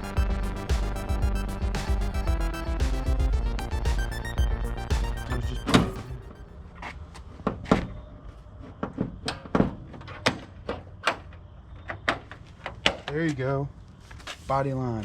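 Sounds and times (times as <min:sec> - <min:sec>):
background music: 0:00.0 - 0:06.8.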